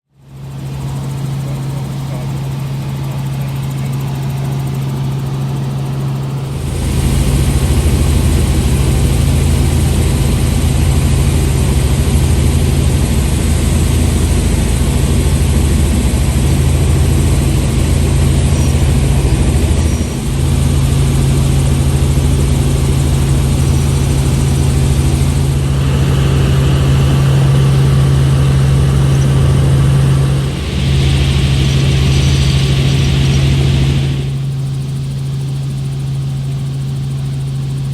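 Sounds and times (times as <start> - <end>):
helicopter droning in flight: 0.1 - 37.9.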